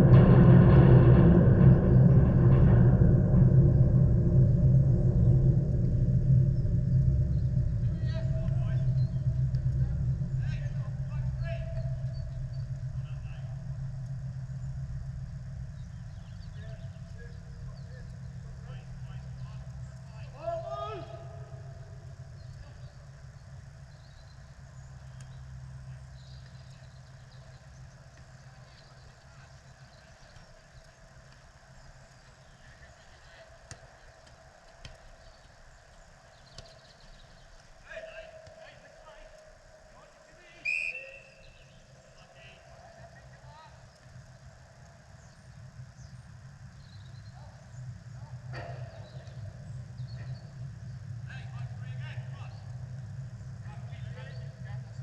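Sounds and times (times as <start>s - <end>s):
wind buffeting microphone: 0.0s - 40.0s, 41.4s - 55.0s
low outdoor rumble: 0.0s - 55.0s
faint distant calls: 1.2s - 55.0s
distant shouts from players: 16.6s - 22.0s, 37.8s - 43.9s.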